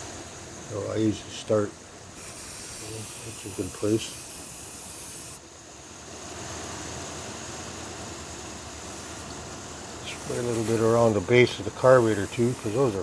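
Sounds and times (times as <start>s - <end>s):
aerosol spray hissing: 2.1s - 5.5s, 7.9s - 13.0s.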